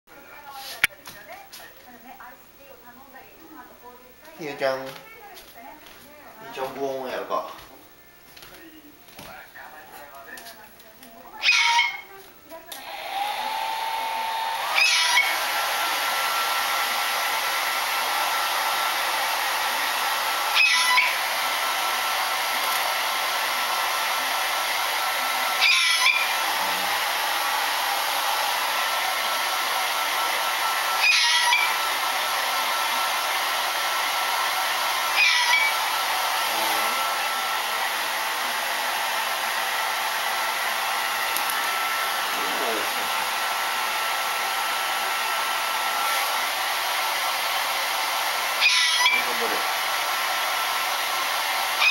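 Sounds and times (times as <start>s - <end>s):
hair dryer blowing: 4.4s - 5.0s, 6.4s - 7.8s, 12.6s - 51.9s.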